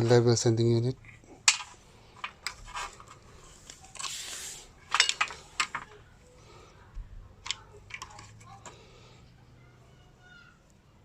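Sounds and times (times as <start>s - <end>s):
rubbing scrape: 2.6s - 4.8s.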